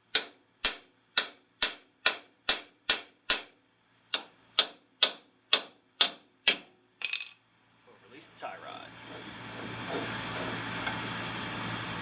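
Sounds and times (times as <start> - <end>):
hammer striking metal: 4.2 - 7.4.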